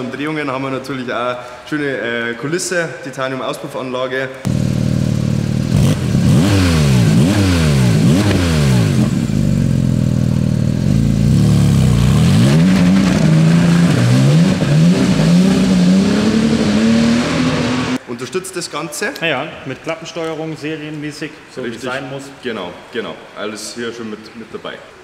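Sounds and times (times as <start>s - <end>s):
car engine revving: 4.5s - 18.0s.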